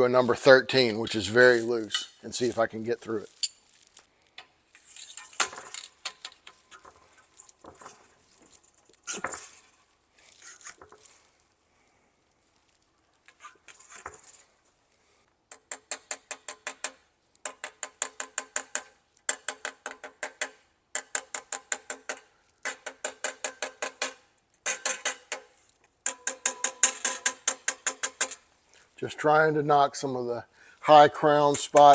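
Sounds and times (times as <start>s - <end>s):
rapid metallic knocks on tube: 15.6s - 28.4s.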